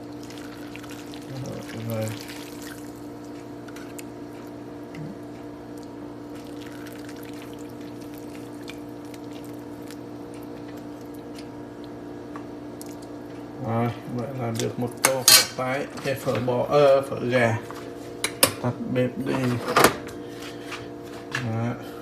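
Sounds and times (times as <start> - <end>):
broth dripping into a bowl: 0.0 - 3.4, 5.7 - 12.0
steady low hum: 0.0 - 22.0.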